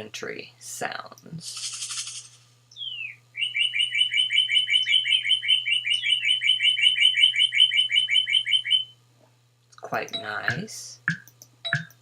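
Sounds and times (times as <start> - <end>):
recorded bird song: 1.5 - 9.0.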